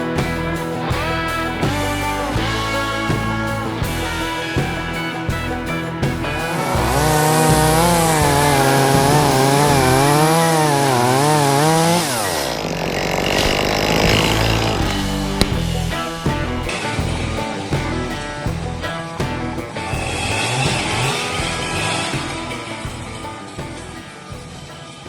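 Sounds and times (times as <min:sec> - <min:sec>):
rock music with guitar: 0:00.0 - 0:25.0
chainsaw cutting wood: 0:06.2 - 0:16.8.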